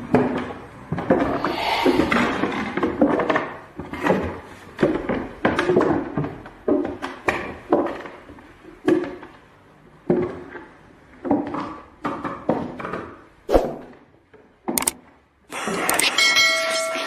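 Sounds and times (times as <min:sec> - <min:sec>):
sharp click: 0:14.8 - 0:15.0.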